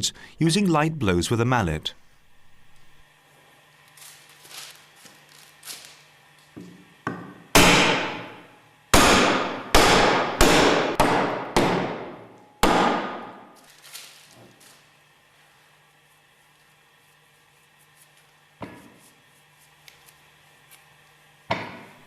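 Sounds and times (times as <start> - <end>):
mallet striking metal: 7.1 - 8.4, 9.0 - 13.4.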